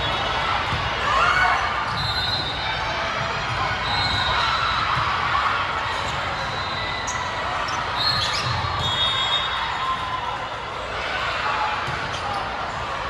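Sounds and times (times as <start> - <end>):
murmur of spectators: 0.0 - 13.0
sneakers squeaking on court floor: 6.0 - 9.2.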